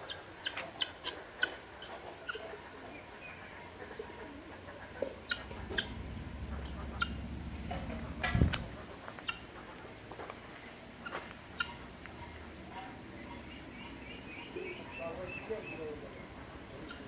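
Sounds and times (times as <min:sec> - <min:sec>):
birds chirping: 0:00.0 - 0:17.0
low rumble: 0:05.3 - 0:09.0.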